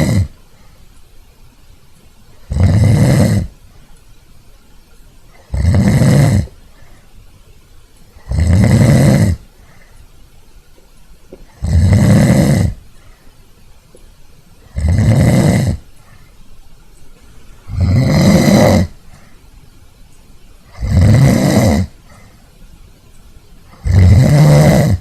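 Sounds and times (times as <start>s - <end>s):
person snoring: 0.0s - 0.4s, 2.4s - 3.6s, 5.3s - 6.6s, 8.2s - 9.5s, 11.4s - 12.8s, 14.7s - 15.9s, 17.6s - 19.1s, 20.7s - 22.3s, 23.7s - 25.0s.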